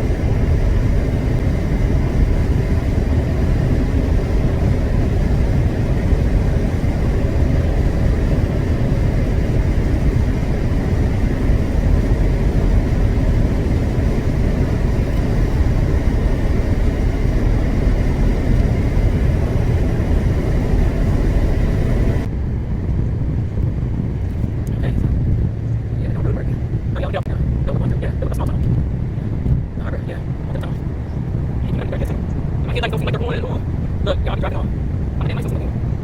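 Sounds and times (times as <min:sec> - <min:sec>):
vehicle road and engine noise: 0:00.0 - 0:36.0.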